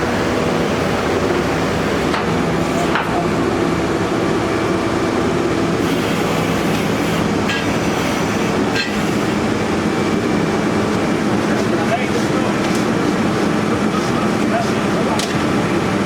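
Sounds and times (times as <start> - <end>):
drilling rig engine running: 0.0 - 16.0
sharp knocks of drill rods: 8.8 - 9.1.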